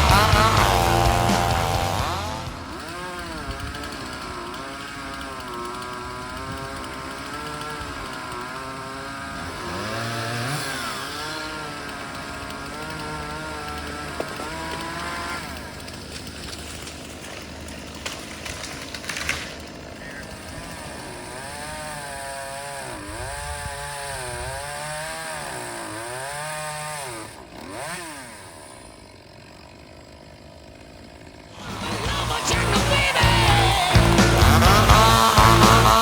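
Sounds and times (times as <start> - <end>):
chainsaw engine revving: 0.0 - 36.0.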